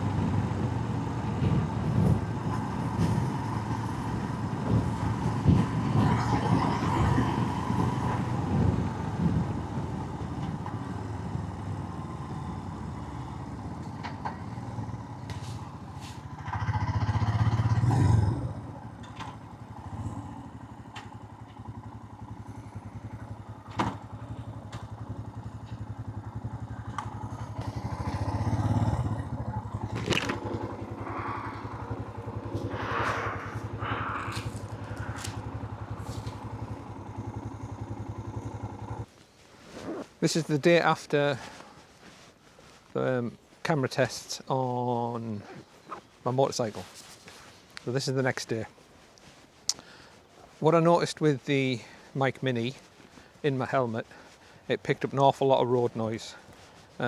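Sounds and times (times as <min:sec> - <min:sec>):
motorcycle engine running: 0:00.0 - 0:39.2
wind noise: 0:01.4 - 0:10.8, 0:28.6 - 0:36.9
sharp clicks and scrapes: 0:29.9 - 0:36.5.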